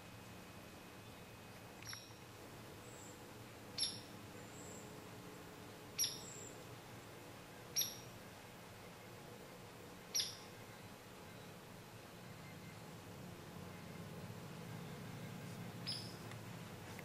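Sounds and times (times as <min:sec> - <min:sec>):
faint background noise: 0:00.0 - 0:17.0
bird chirping: 0:01.0 - 0:03.2, 0:03.8 - 0:04.9, 0:06.0 - 0:06.6, 0:07.7 - 0:08.2, 0:10.1 - 0:12.9, 0:14.7 - 0:16.3.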